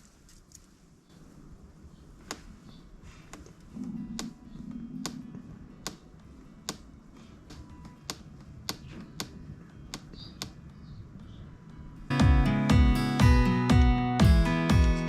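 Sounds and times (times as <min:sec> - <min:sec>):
acoustic guitar music: 0:11.5 - 0:15.0.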